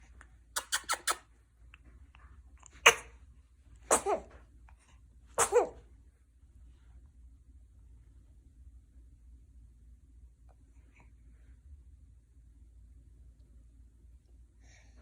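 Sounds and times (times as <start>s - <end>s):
baby sneezing: 0.6s - 1.2s, 2.7s - 3.2s, 3.9s - 4.4s, 5.4s - 5.8s.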